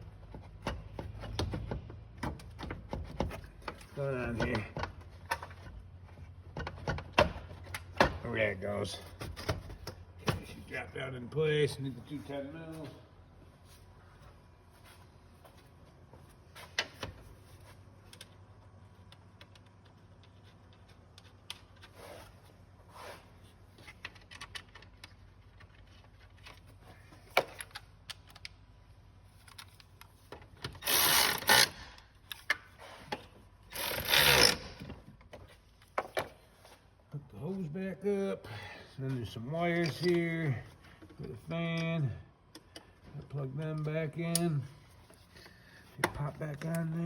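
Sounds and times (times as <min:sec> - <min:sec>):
hand ratchet clicking: 0:30.8 - 0:32.0, 0:33.7 - 0:34.8.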